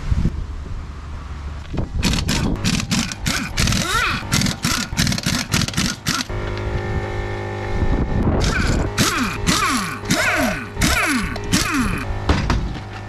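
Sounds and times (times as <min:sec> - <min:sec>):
sweeping synth lines: 0:02.6 - 0:13.0
music beat: 0:08.8 - 0:13.0.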